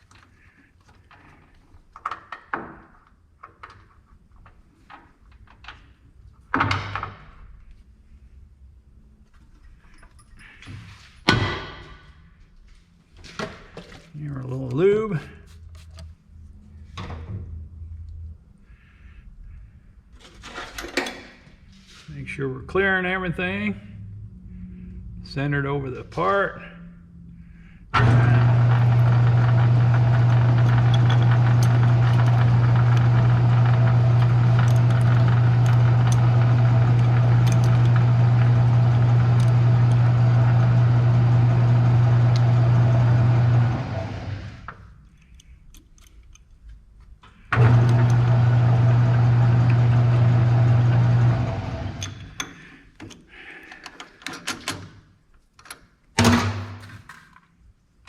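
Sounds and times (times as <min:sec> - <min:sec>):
metal lathe motor hum: 0:28.0 - 0:44.6, 0:47.6 - 0:52.0.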